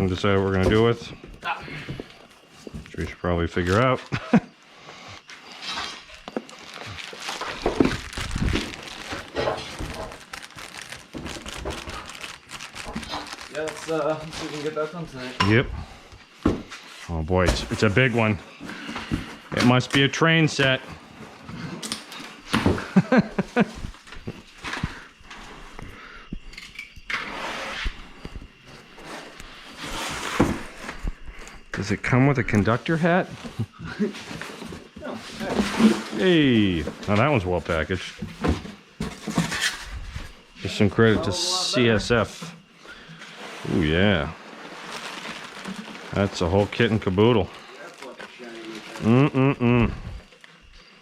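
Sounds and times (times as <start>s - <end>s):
packing material crinkling: 6.2s - 15.1s, 43.6s - 49.3s
cardboard box being opened: 6.5s - 14.0s
person laughing: 22.7s - 24.0s, 49.0s - 50.0s.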